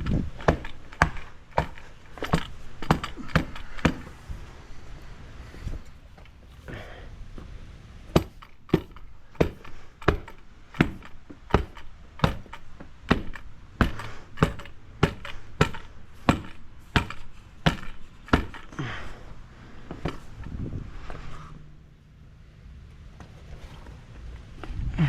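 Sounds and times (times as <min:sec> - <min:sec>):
tamper thudding on concrete: 0:00.0 - 0:04.2, 0:08.1 - 0:19.0.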